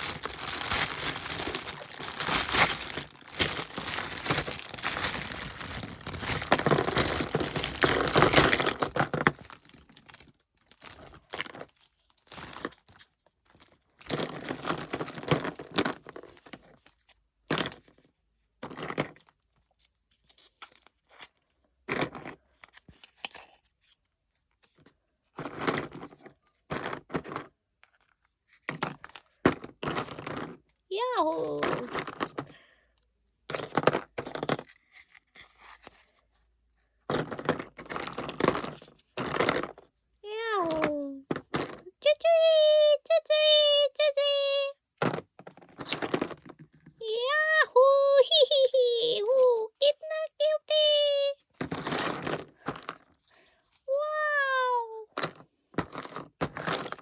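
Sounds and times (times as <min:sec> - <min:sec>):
packaging crinkling and tearing: 0:00.0 - 0:17.8, 0:18.7 - 0:21.5, 0:37.2 - 0:41.9, 0:51.6 - 0:53.8.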